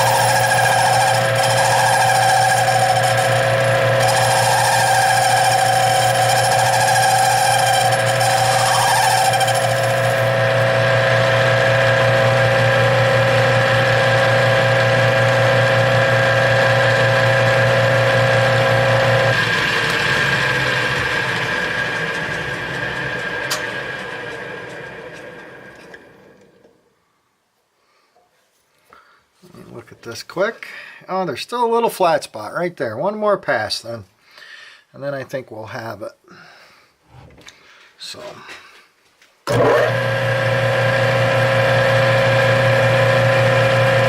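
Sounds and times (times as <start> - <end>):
high whine of metal cutting: 0.0 - 26.2, 39.5 - 44.0
lathe motor hum: 0.0 - 26.5, 39.5 - 44.0.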